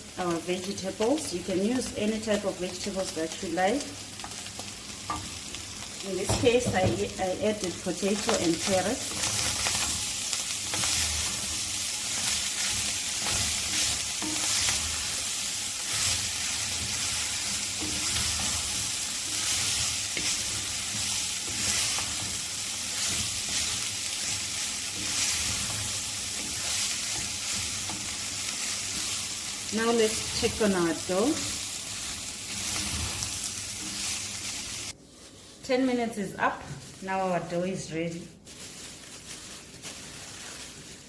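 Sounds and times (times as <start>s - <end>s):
meat and vegetables sizzling: 0.0s - 41.0s
stirring scrapes: 31.4s - 37.5s.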